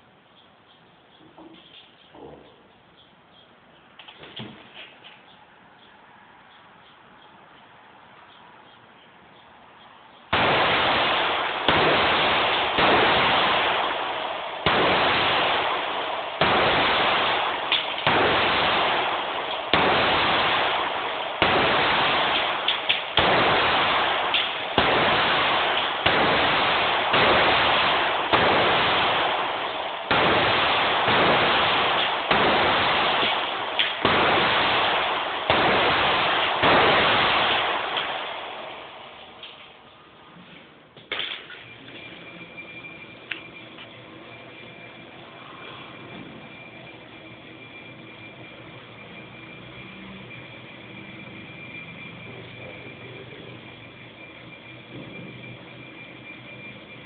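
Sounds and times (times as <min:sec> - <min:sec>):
pistol shots ringing: 0:10.3 - 0:39.8.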